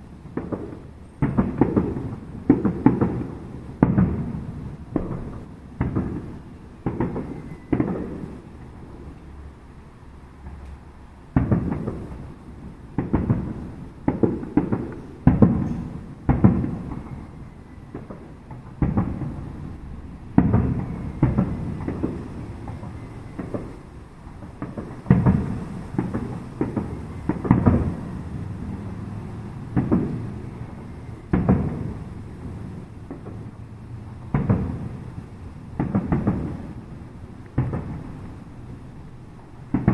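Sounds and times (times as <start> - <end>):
firework shells bursting: 0.3 - 8.8, 11.3 - 33.6, 34.3 - 38.4, 39.6 - 39.9.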